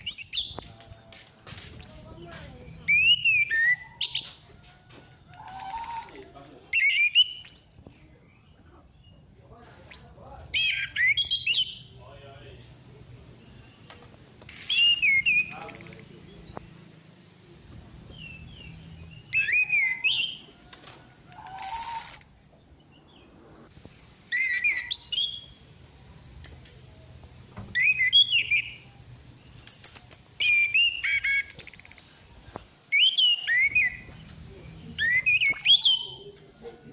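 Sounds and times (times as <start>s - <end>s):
thrush whistled calls: 0.0s - 0.6s, 1.7s - 4.4s, 5.1s - 8.5s, 9.9s - 12.0s, 13.4s - 16.6s, 18.1s - 22.4s, 24.2s - 25.6s, 27.6s - 29.0s, 29.6s - 32.2s, 32.9s - 36.4s
high buzzy bird bursts: 14.5s - 16.1s.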